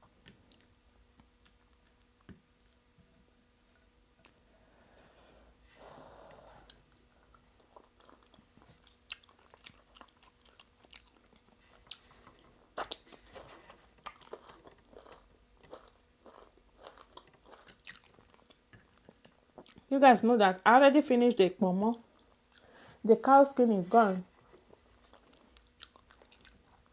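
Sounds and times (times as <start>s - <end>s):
chewing and biting food: 7.2s - 13.1s, 14.0s - 19.9s, 25.0s - 26.9s.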